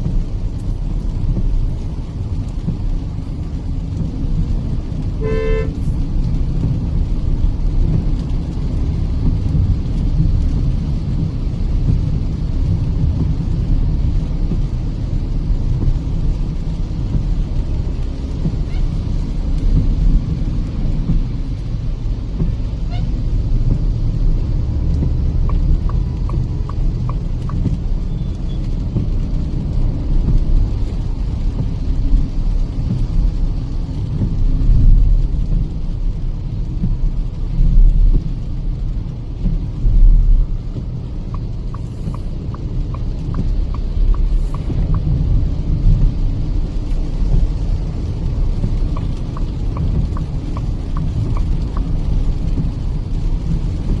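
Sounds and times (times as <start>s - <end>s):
engine and tyres rumbling: 0.0s - 54.0s
hiss of wet road: 0.0s - 54.0s
light evenly spaced ticking: 21.0s - 54.0s.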